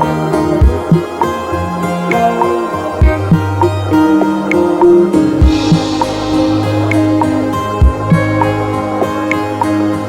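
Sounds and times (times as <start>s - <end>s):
soft new-age instrumental music: 0.0s - 9.8s.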